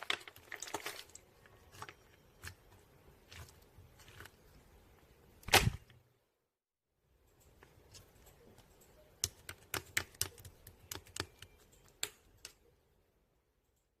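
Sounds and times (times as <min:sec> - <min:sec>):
crunchy slime crackling: 0:00.0 - 0:04.9.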